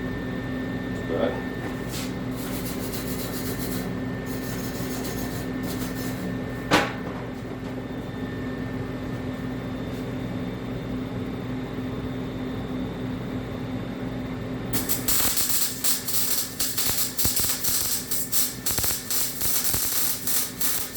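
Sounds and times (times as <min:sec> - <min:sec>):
welder electric hum: 0:00.0 - 0:13.6, 0:14.3 - 0:20.9
short hissing bursts: 0:14.8 - 0:20.9.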